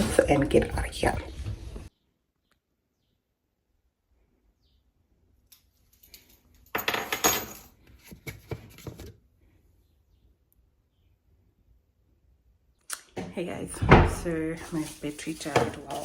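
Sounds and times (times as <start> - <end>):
small hard objects clinking: 14.1 - 16.0.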